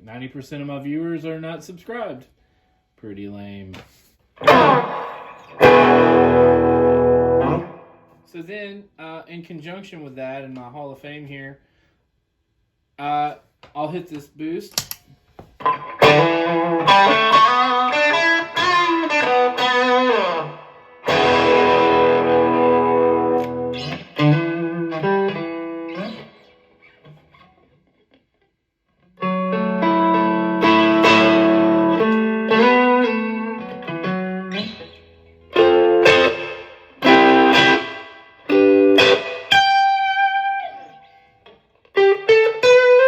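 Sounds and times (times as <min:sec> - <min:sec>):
overdriven electric guitar: 0:04.4 - 0:08.2, 0:15.6 - 0:28.4, 0:29.0 - 0:43.0.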